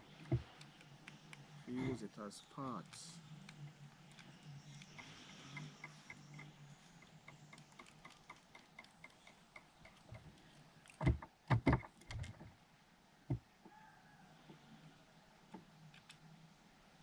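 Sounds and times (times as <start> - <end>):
faint regular ticking: 4.8 - 10.2.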